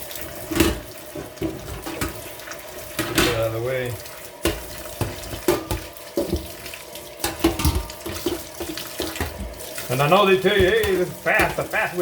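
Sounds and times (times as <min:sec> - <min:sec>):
water running from tap: 0:00.0 - 0:12.0
knocks and clatter in sink: 0:00.4 - 0:02.2, 0:03.0 - 0:03.5, 0:04.4 - 0:06.6, 0:07.2 - 0:09.6, 0:10.3 - 0:12.0.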